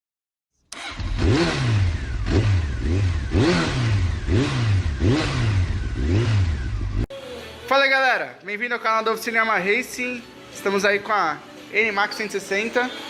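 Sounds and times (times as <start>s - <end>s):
scooter engine revving: 0.7s - 7.1s.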